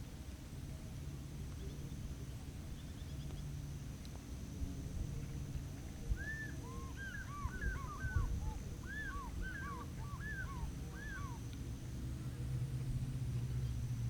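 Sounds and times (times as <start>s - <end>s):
birds chattering: 6.2s - 11.5s.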